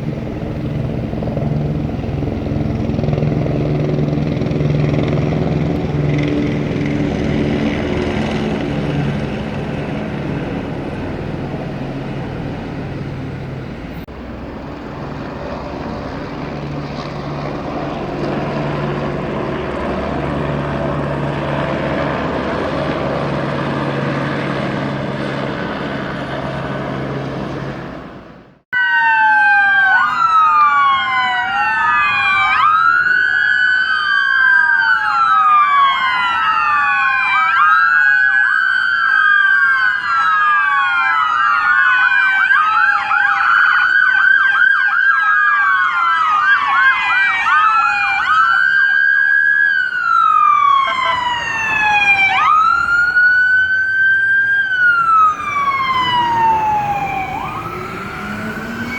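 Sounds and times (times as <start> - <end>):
engine drone: 0.0 - 38.2, 42.6 - 58.9
emergency vehicle sirens: 0.0 - 58.9.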